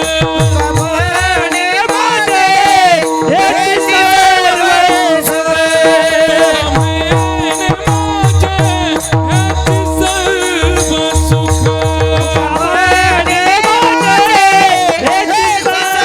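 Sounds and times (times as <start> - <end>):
harmonium sustained notes: 0.0 - 16.0
person singing devotional melody: 0.0 - 16.0.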